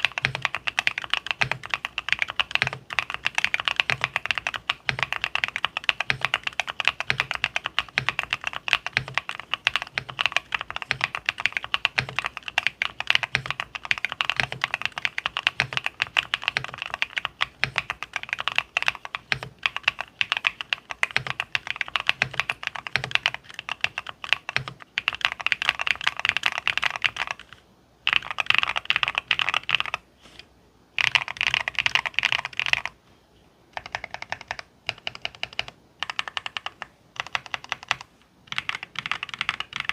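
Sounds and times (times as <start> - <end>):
fast mechanical keyboard typing: 0.0 - 30.0, 31.0 - 33.0, 33.7 - 39.9.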